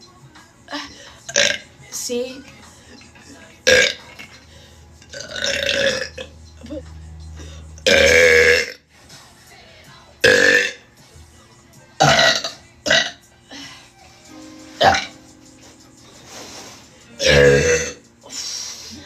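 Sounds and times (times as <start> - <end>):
woman burping loudly: 1.3 - 1.6, 3.6 - 4.3, 5.1 - 6.8, 7.8 - 8.8, 10.2 - 10.8, 12.0 - 13.2, 17.2 - 18.0.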